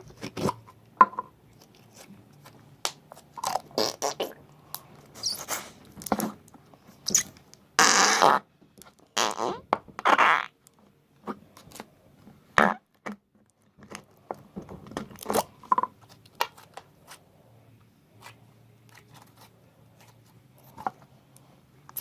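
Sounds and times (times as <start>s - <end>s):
short fart sounds: 3.8s - 4.4s, 7.1s - 8.4s, 9.2s - 10.5s.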